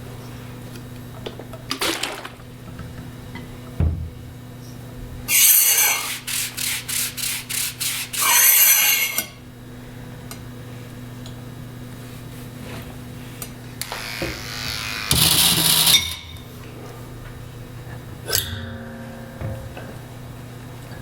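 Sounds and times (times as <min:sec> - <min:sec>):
steady low hum: 0:02.4 - 0:05.3, 0:09.2 - 0:21.0
rasping scrapes like sawing: 0:05.5 - 0:09.2.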